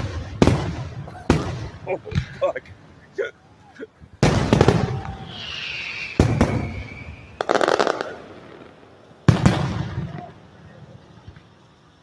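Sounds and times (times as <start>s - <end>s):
firework crackling: 0.0s - 12.0s
high firework whistle: 4.3s - 8.6s.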